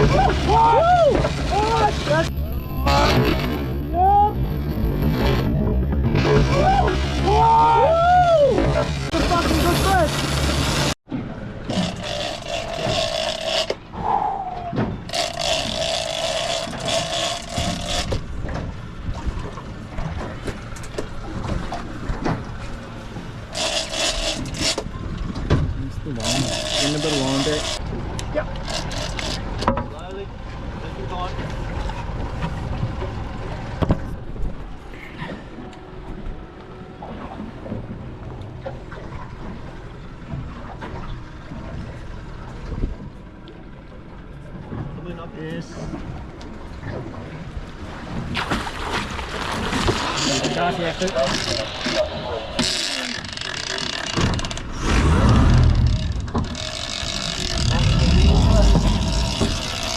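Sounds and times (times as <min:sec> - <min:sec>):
boat noise: 0:00.0 - 0:59.9
water washing around hull: 0:00.0 - 0:59.9
fishing reel drag screaming: 0:11.8 - 0:14.4, 0:23.4 - 0:24.8, 0:26.2 - 0:27.8, 0:49.9 - 0:59.9.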